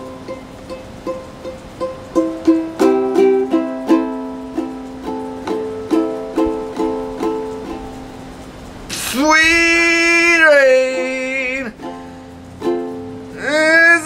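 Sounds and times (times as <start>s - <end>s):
ukulele picked notes: 0.0s - 14.0s.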